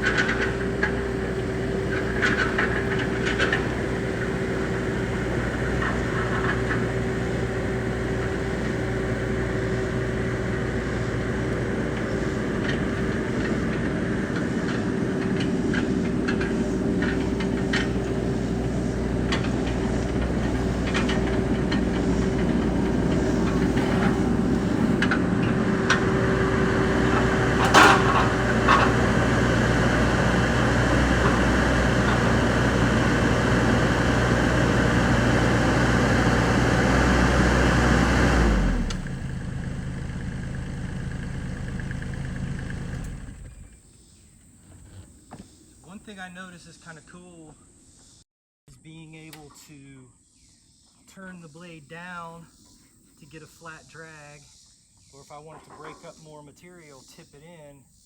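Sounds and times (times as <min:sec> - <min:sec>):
blade dragging over ground: 0:00.0 - 0:39.1
excavator engine running: 0:00.0 - 0:43.8.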